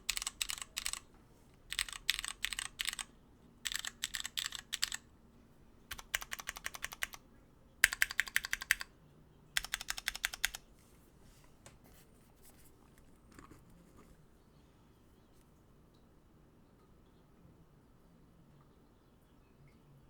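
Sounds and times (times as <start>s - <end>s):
mechanical keyboard keystrokes: 0.0s - 1.1s, 1.7s - 5.0s, 5.9s - 7.2s, 7.8s - 8.9s, 9.6s - 10.6s.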